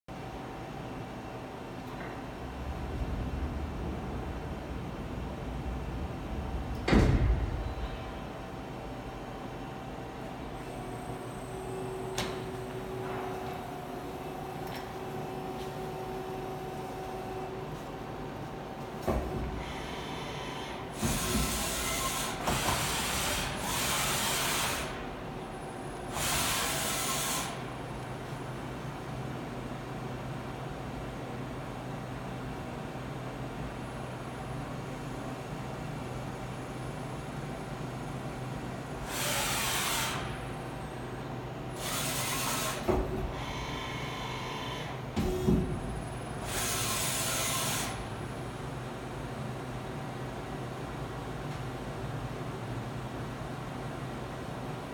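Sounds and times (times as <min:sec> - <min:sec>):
machine clunk: 0:06.7 - 0:08.2, 0:45.2 - 0:46.0.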